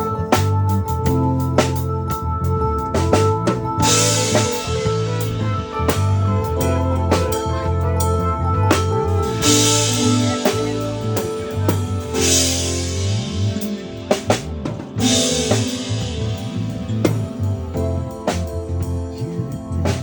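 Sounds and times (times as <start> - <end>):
drum kit groove: 0.0 - 20.0
held bass notes: 0.0 - 20.0
cymbal crash: 3.8 - 17.9.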